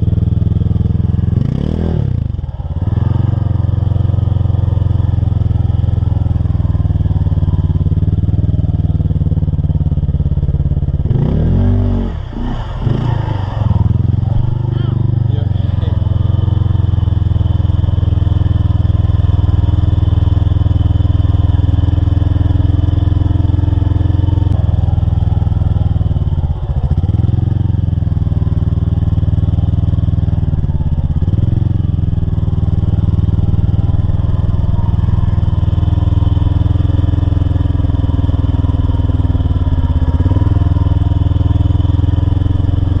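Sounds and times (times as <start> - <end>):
truck engine revving high: 11.0 - 18.6.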